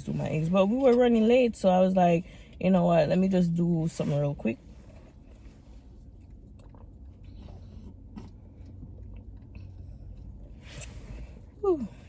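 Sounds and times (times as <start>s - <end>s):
low hum: 0.0s - 12.0s
person chewing food: 6.2s - 10.5s.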